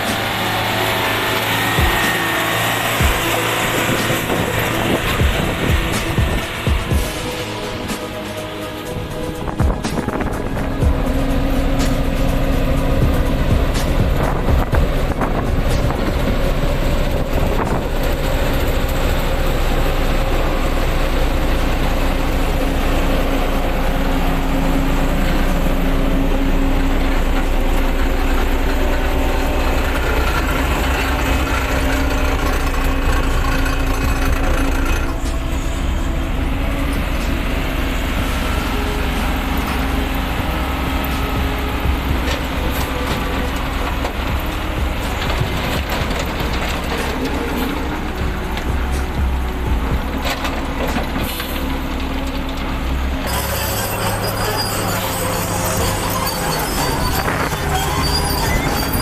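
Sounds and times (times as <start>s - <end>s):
excavator diesel engine under load: 0.0s - 59.0s.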